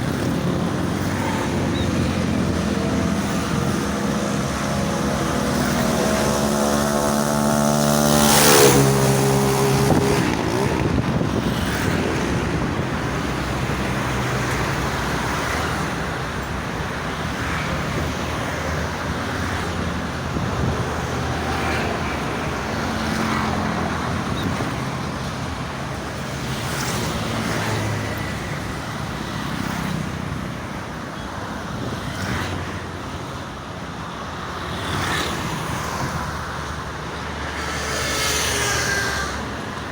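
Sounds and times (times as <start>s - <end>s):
vehicle engine drone passing: 0.0s - 14.5s
road traffic noise: 0.0s - 39.9s.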